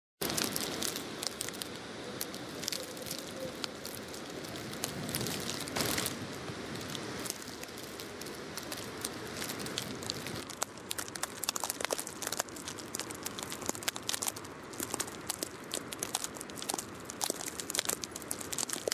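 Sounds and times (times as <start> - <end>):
wind rushing over microphone: 0.2 - 16.8
sharp crackles and ticks: 0.2 - 18.9.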